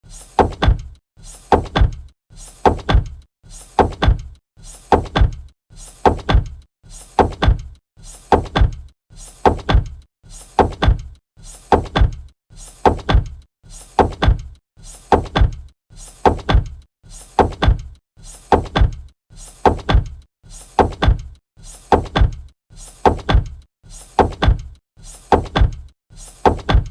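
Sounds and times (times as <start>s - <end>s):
heavy thunks: 0.4s - 0.8s, 14.0s - 14.5s, 15.1s - 15.6s, 16.2s - 16.8s, 17.4s - 17.9s, 18.5s - 19.0s, 19.6s - 20.2s, 20.8s - 21.3s, 21.9s - 22.4s, 23.0s - 23.6s, 24.2s - 24.7s, 25.3s - 25.8s, 26.4s - 26.9s.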